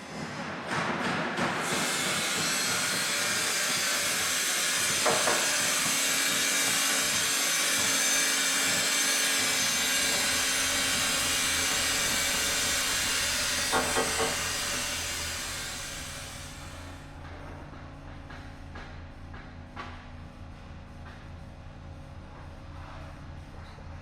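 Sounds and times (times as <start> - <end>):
hissing construction machinery: 0.0 - 17.3.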